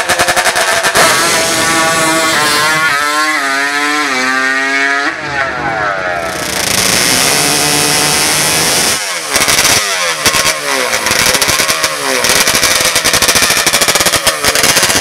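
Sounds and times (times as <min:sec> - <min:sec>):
engine revving at full throttle: 0:00.0 - 0:15.0.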